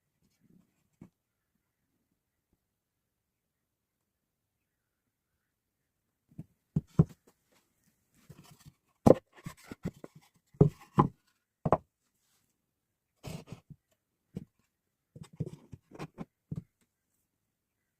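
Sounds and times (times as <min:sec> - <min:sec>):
wooden box knocking: 0:09.0 - 0:10.0, 0:10.6 - 0:11.8.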